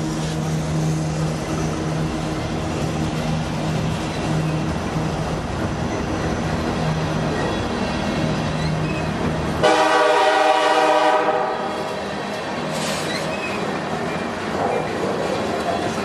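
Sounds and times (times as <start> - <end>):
locomotive rumble: 0.0 - 16.0
train cars on rails: 0.0 - 16.0
locomotive air horn blast: 9.6 - 11.7.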